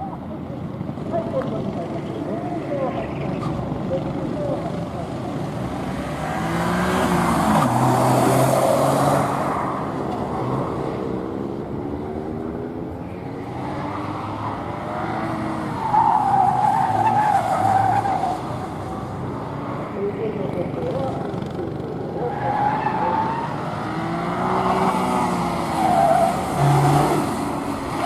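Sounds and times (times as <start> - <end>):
car engine revving: 2.2 - 11.3.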